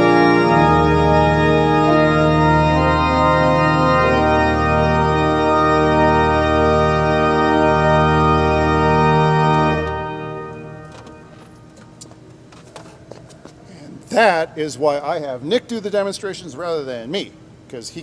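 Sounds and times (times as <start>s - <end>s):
pipe organ chord: 0.0s - 12.2s.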